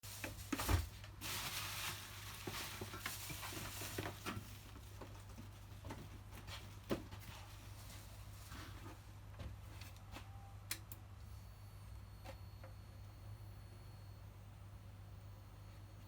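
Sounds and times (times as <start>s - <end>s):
rustling of handling: 0.0s - 10.3s.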